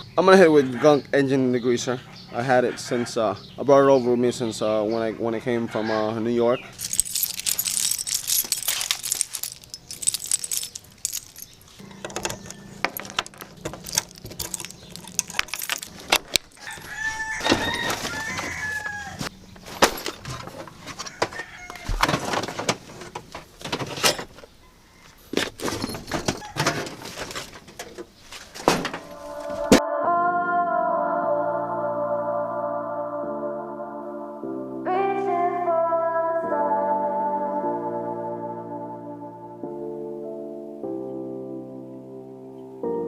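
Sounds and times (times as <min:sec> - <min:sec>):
rooster crowing: 0:02.4 - 0:03.4, 0:16.6 - 0:19.3, 0:21.0 - 0:22.0
clicks and knocks: 0:06.8 - 0:16.9.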